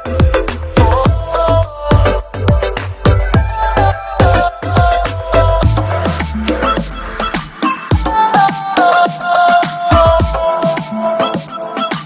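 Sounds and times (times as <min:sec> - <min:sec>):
music with drums and bass: 0:00.0 - 0:12.0.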